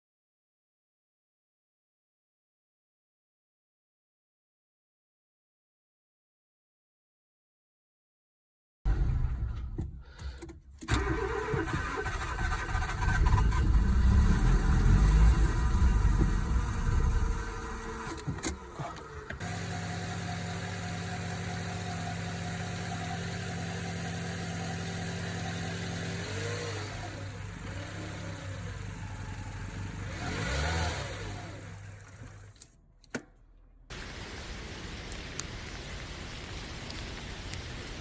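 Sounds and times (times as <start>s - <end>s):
car engine idling and revving: 8.9s - 33.9s.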